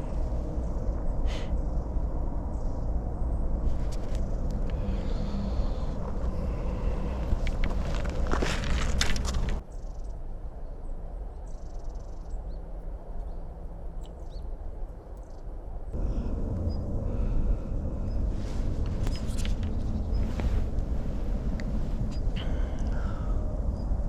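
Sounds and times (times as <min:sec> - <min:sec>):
low rumble: 0:00.0 - 0:24.0
faint bird chirps: 0:09.6 - 0:16.0, 0:16.6 - 0:24.0.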